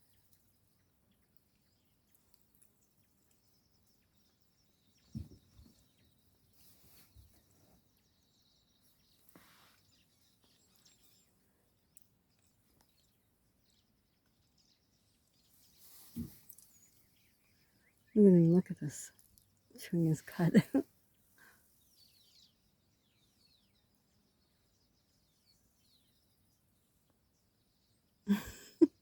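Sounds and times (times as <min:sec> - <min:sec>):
faint bird chirps: 0:00.0 - 0:29.0
soft low thump: 0:05.1 - 0:05.7.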